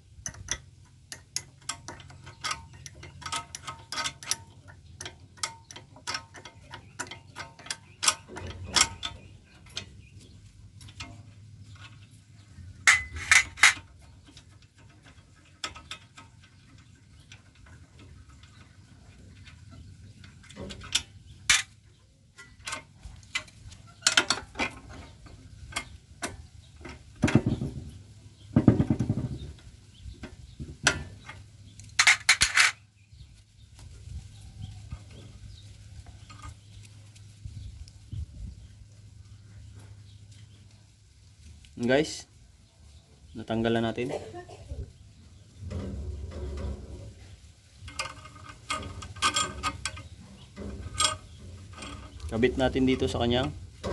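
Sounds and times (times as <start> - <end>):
metal tool clicks and clinks: 0.2 - 9.9.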